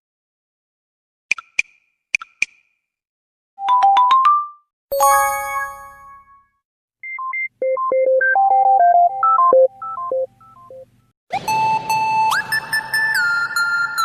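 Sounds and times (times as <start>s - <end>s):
rising notification chime: 4.9s - 6.4s
marimba-like jingle: 5.0s - 6.4s.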